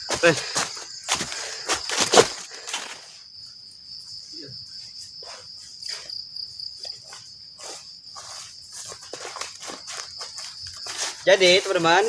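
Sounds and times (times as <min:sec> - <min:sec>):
footsteps: 0:00.0 - 0:03.2, 0:04.8 - 0:12.0
crickets chirring: 0:00.0 - 0:12.0.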